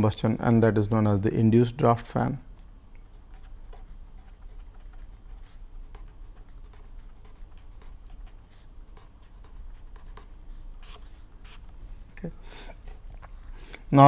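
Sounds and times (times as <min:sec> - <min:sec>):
low steady hum: 0:00.0 - 0:14.0
pen scratching on paper: 0:03.1 - 0:11.6.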